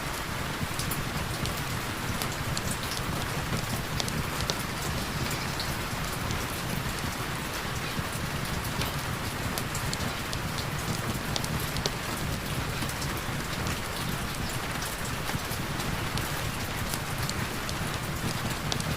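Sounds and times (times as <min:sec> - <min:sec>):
heavy rain falling: 0:00.0 - 0:18.9
raindrops ticking: 0:00.2 - 0:18.9.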